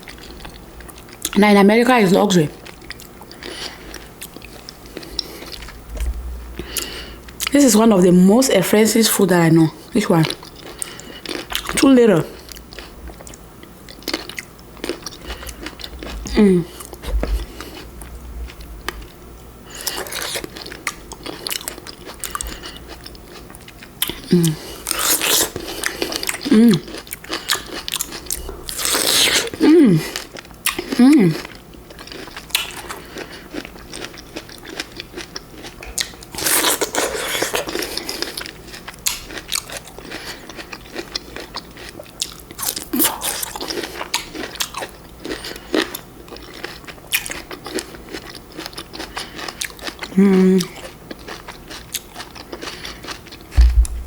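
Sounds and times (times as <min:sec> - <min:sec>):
crunchy fruit bites and chewing: 0:09.9 - 0:54.0.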